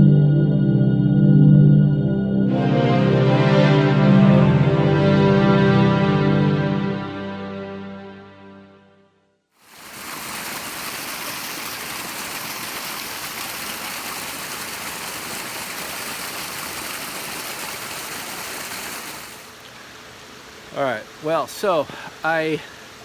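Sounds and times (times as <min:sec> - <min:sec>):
music: 0:00.0 - 0:09.5
flowing water rushing: 0:09.6 - 0:23.0.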